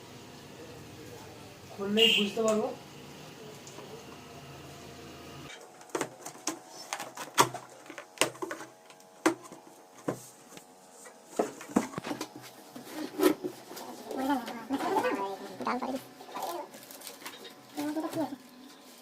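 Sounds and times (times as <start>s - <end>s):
cardboard and paper rustling: 5.7s - 19.0s.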